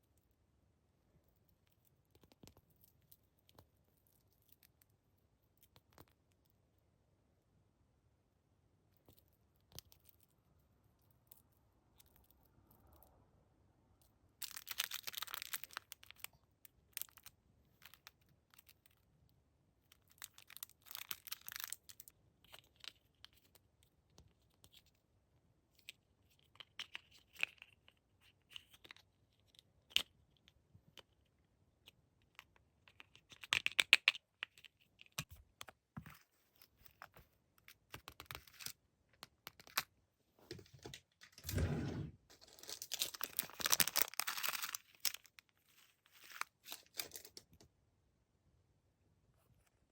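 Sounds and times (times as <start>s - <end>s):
packaging tearing and crinkling: 14.4s - 16.3s, 42.3s - 45.4s.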